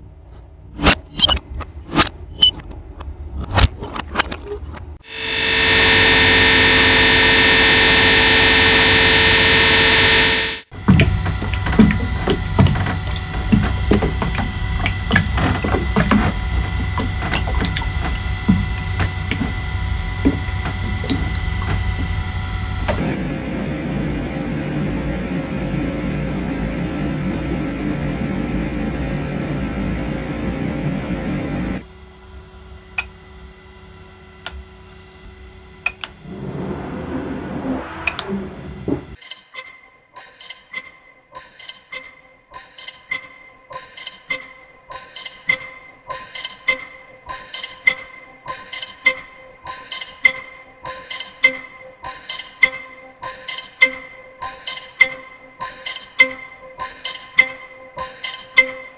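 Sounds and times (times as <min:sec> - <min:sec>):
steady low hum: 0:00.0 - 0:39.2
loud engine-like noise: 0:05.0 - 0:31.8, 0:36.0 - 0:39.2
faint steady tones: 0:05.0 - 0:31.9
loud rushing noise: 0:36.2 - 0:39.2.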